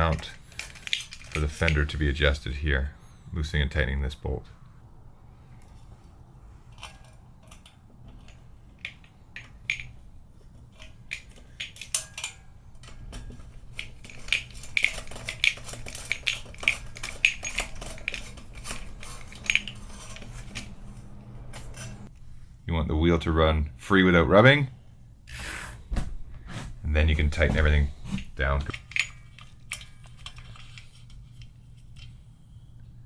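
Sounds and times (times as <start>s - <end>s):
metal hardware clinking: 0.0s - 3.1s, 5.5s - 22.1s, 26.5s - 32.2s.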